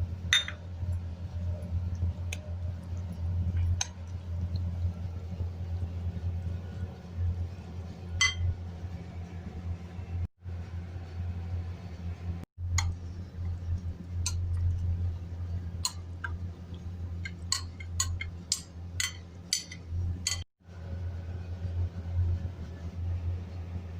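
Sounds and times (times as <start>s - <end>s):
steady low hum: 0.0s - 23.9s
spoon clinking against glass dish: 0.4s - 0.6s, 8.2s - 8.5s, 17.2s - 20.4s.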